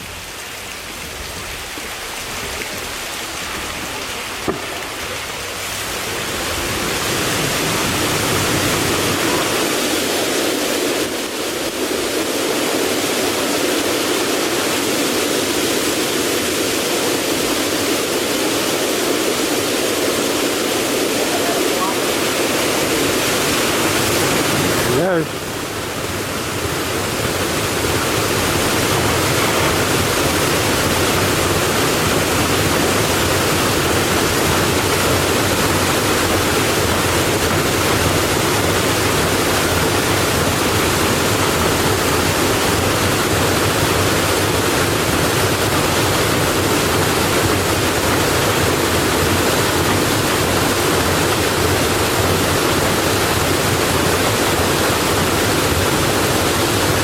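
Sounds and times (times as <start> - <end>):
water rushing through flume: 0.0 - 57.0.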